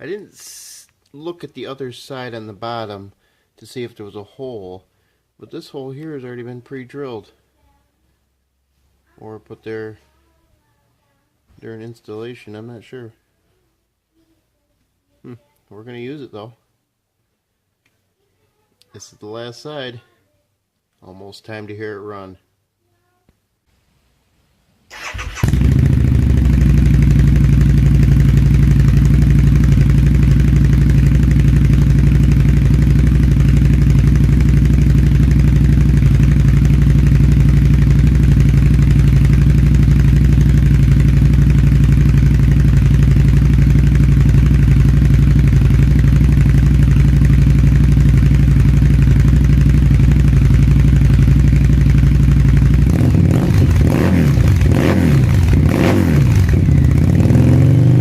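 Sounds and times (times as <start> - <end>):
motorcycle throttle blips: 24.9 - 58.0
motorcycle engine idling: 25.0 - 58.0.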